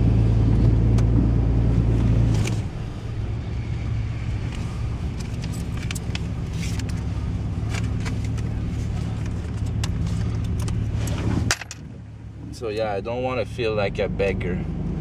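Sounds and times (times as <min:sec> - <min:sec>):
truck engine drone: 0:00.0 - 0:15.0
light clicks and rattles: 0:04.5 - 0:10.8.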